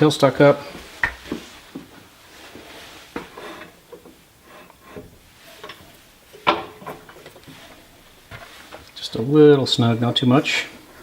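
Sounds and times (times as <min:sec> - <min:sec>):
metal knocks and scraping: 0:02.6 - 0:08.8.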